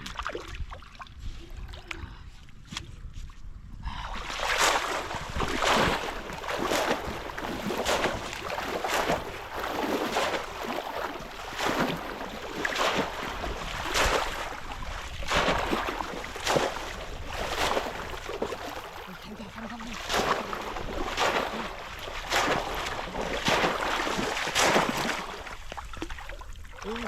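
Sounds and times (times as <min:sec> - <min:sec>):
water splashing in a river: 0:00.0 - 0:02.0, 0:04.0 - 0:27.0.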